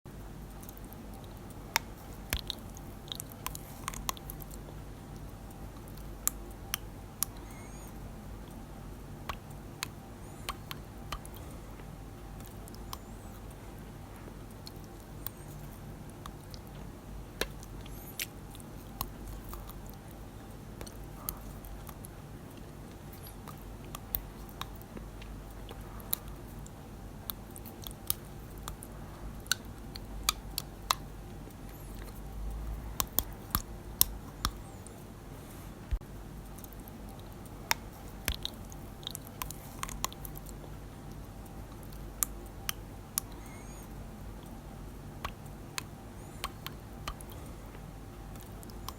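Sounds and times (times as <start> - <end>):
faint low hum: 0.1 - 48.9.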